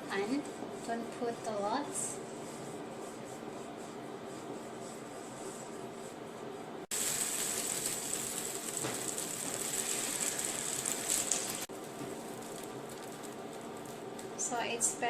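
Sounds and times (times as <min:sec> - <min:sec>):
batter sizzling in pan: 0:06.9 - 0:14.4.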